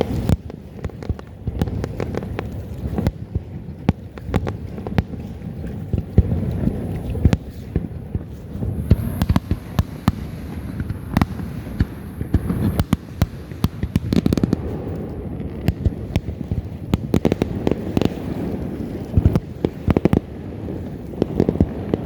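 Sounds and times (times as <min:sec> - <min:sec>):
fireworks bangs and pops: 0:00.0 - 0:22.0
high hiss: 0:08.5 - 0:14.9
low rumble: 0:08.5 - 0:16.8.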